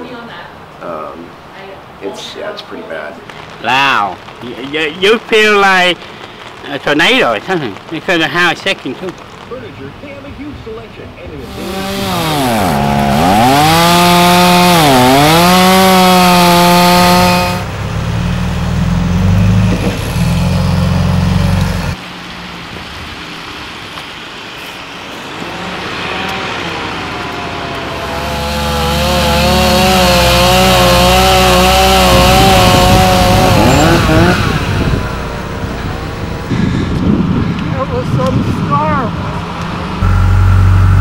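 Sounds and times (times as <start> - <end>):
chainsaw cutting wood: 11.4 - 17.7, 27.8 - 35.6, 40.0 - 41.0.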